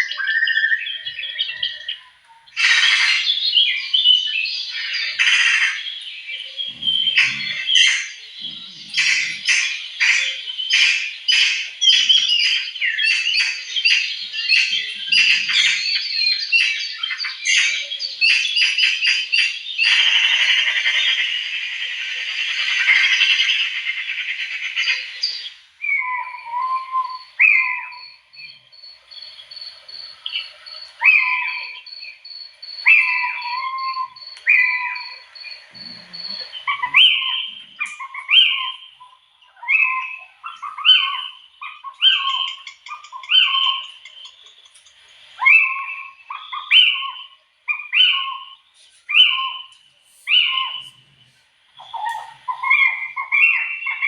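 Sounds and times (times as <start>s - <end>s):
birds calling: 0.0s - 54.0s
dense high chatter: 0.0s - 54.0s.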